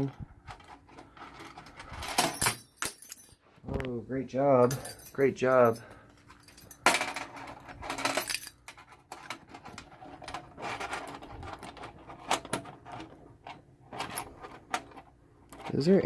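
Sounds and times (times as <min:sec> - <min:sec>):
keys jangling against padlock: 0:01.5 - 0:03.4, 0:04.6 - 0:06.8, 0:07.9 - 0:08.7.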